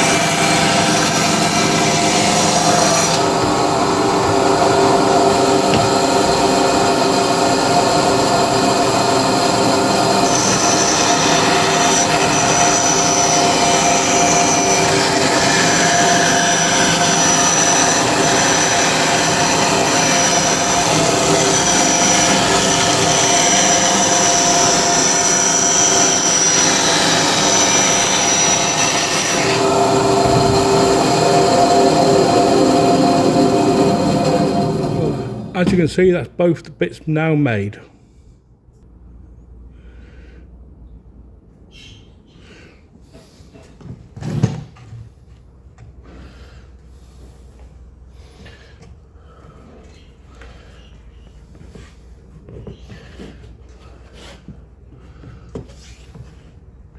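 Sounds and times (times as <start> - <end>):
power tool machine hum: 0.0 - 35.6
high whine: 0.0 - 37.5.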